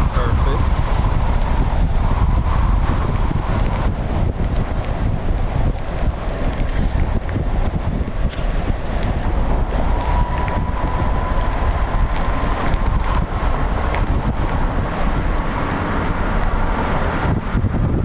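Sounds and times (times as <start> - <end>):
strong wind on microphone: 0.0 - 18.0.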